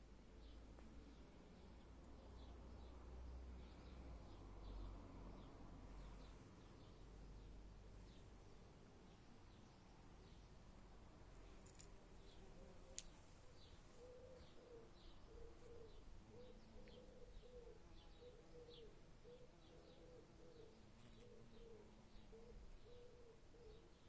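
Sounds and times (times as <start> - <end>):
small birds chirping: 0.0 - 24.0
dove cooing: 13.8 - 24.0.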